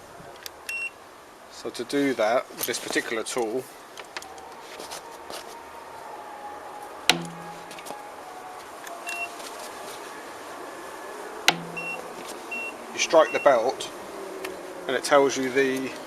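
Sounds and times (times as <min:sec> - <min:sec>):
short high beeps: 0:11.6 - 0:12.7.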